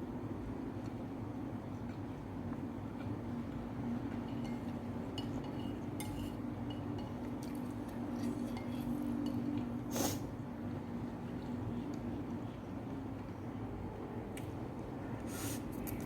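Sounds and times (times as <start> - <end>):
utensils clinking against bowl: 4.2 - 9.6.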